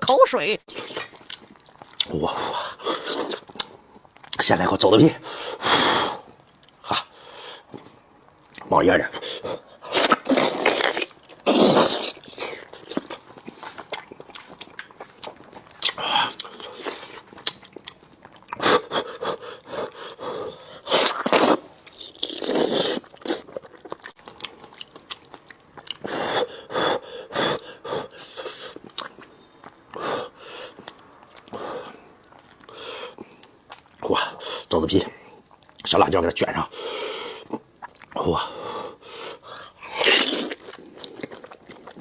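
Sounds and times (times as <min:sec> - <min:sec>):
wet chewing and smacking: 0:00.7 - 0:02.2, 0:02.8 - 0:04.5, 0:09.3 - 0:26.1, 0:27.6 - 0:34.1, 0:35.2 - 0:36.0, 0:37.5 - 0:38.2, 0:39.4 - 0:42.0.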